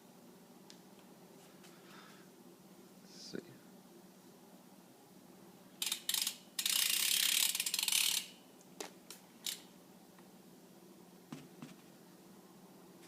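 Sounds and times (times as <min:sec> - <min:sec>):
bike hub freewheel clicking: 0:05.8 - 0:08.4, 0:09.4 - 0:09.7.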